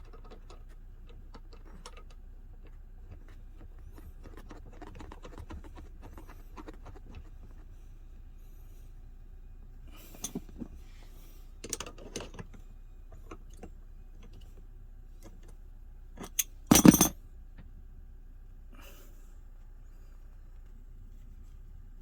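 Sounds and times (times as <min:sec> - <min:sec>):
small metal objects clinking: 0:16.2 - 0:17.1.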